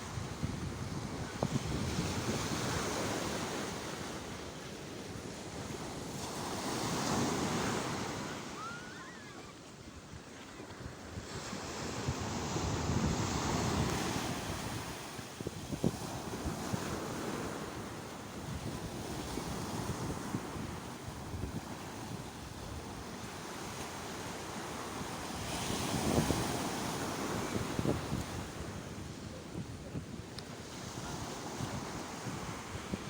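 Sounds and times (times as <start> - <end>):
sea waves surging: 0.0 - 33.0.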